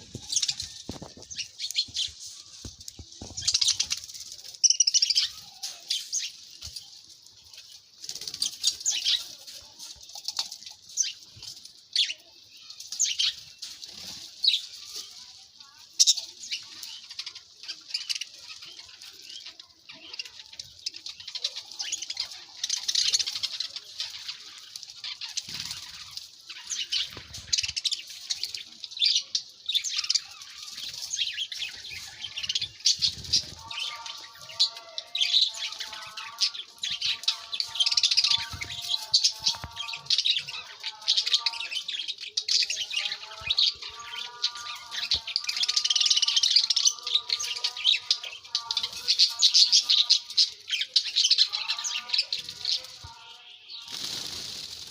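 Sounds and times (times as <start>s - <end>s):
small birds chirping: 0.0s - 54.9s
wing flutters: 53.9s - 54.9s.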